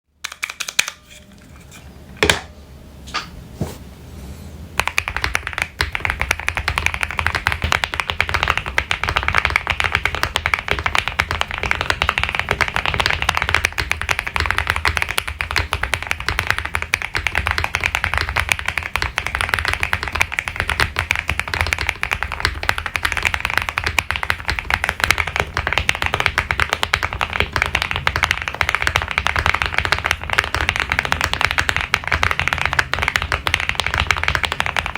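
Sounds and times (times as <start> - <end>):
mechanical keyboard typing: 4.8 - 34.9.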